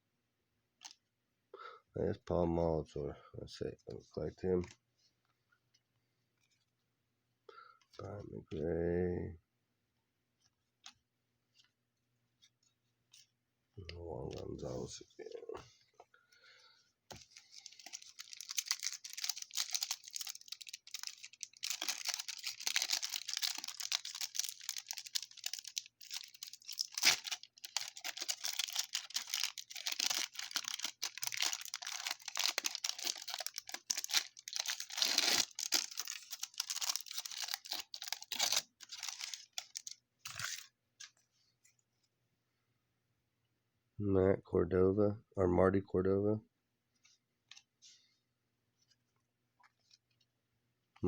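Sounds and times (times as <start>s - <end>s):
wrapper tearing and crinkling: 17.3s - 40.7s.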